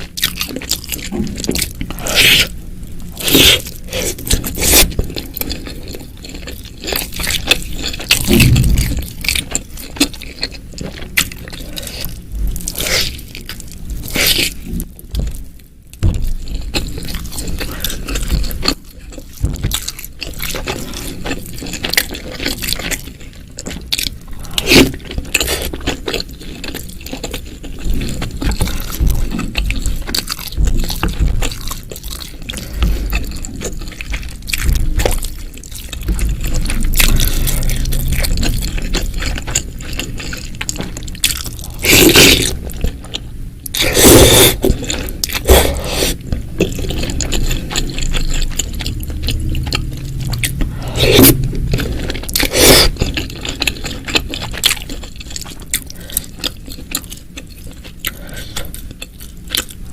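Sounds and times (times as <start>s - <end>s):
wet squishy chewing: 16.2s - 59.9s.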